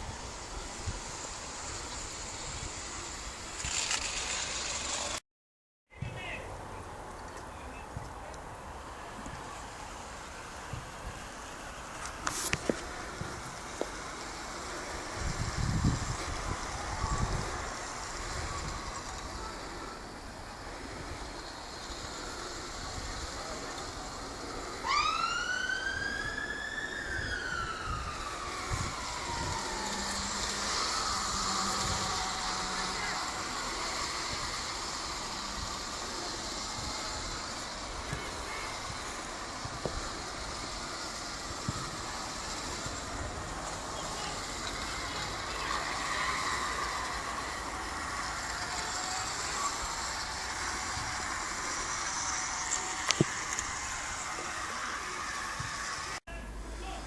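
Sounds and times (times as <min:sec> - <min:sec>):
model train running on track: 0:00.0 - 0:05.2, 0:06.2 - 0:57.0
siren wail: 0:24.8 - 0:35.9.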